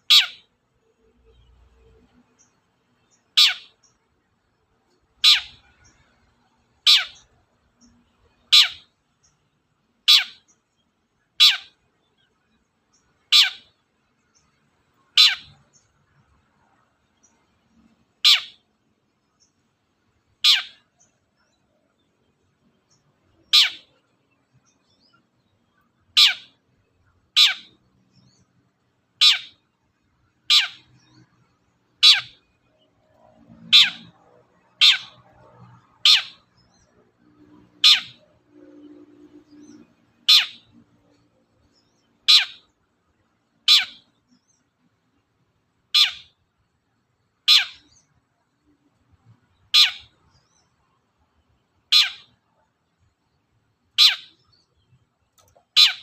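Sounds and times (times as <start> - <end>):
shrike calling: 0.0 - 0.5, 3.1 - 3.8, 5.2 - 6.0, 6.8 - 7.4, 8.3 - 9.0, 10.1 - 10.5, 11.4 - 11.8, 13.2 - 13.8, 15.1 - 15.7, 18.2 - 18.6, 20.4 - 21.0, 23.4 - 24.1, 25.7 - 26.6, 27.2 - 28.4, 29.2 - 29.7, 30.4 - 31.3, 32.0 - 32.6, 33.4 - 37.0, 37.6 - 41.2, 41.8 - 42.8, 43.7 - 44.2, 45.9 - 46.4, 47.4 - 48.0, 49.6 - 50.5, 51.8 - 52.4, 54.0 - 54.6, 55.6 - 56.0.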